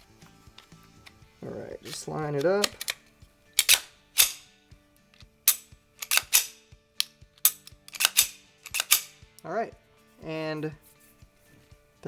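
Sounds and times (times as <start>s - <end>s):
soft background music: 0.0s - 12.0s
pistol slide metallic clicks: 2.4s - 3.0s, 3.6s - 4.5s, 5.5s - 9.2s.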